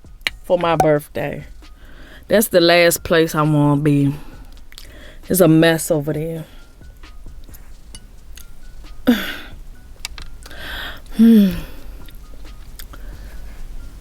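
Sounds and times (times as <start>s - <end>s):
breaths: 1.7s - 2.3s, 4.2s - 5.3s, 10.4s - 12.2s, 12.9s - 13.9s
eating and mouth noises: 10.0s - 13.1s
woman's wordless vocal sounds: 11.1s - 11.9s.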